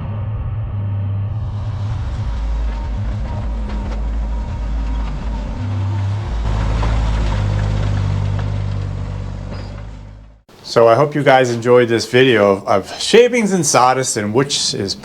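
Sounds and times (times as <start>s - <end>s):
heavy machine rumbling: 0.0s - 10.4s.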